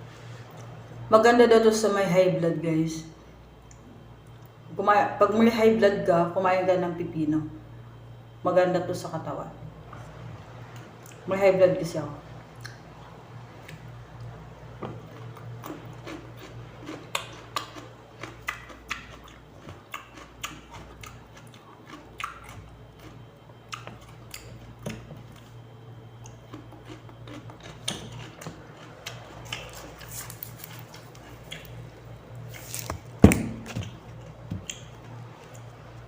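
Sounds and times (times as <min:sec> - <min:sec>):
steady low hum: 0:00.0 - 0:36.0
person chewing cucumber: 0:10.7 - 0:11.3, 0:12.5 - 0:36.0.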